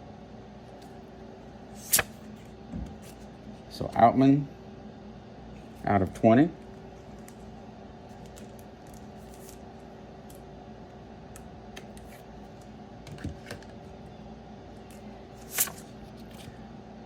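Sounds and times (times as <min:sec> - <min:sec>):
steady low hum: 0:00.0 - 0:17.0
trading cards clicking and scraping: 0:01.7 - 0:03.4, 0:08.1 - 0:10.4, 0:11.4 - 0:13.8, 0:14.9 - 0:16.6.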